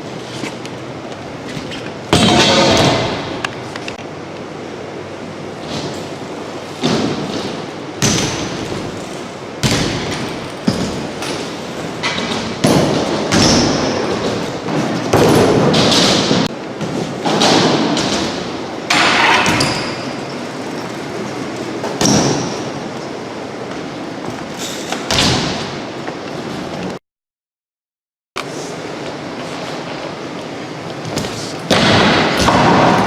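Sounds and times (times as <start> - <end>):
bike tyres rolling and scraping: 10.0 - 27.0
bmx bike landing thuds: 24.2 - 25.8.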